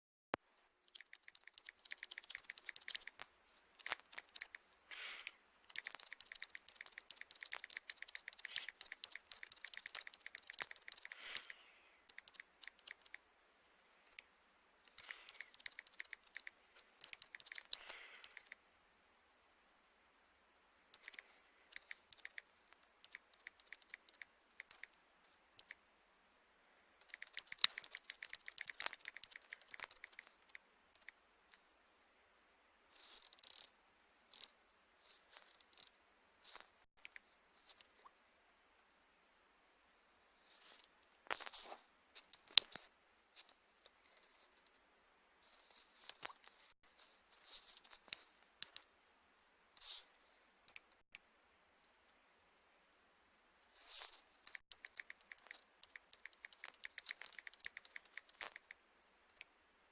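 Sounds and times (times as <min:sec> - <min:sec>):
computer keyboard typing: 0:00.9 - 0:04.6, 0:05.7 - 0:13.2, 0:14.9 - 0:18.6, 0:21.0 - 0:25.0, 0:27.0 - 0:31.2, 0:54.5 - 0:58.8.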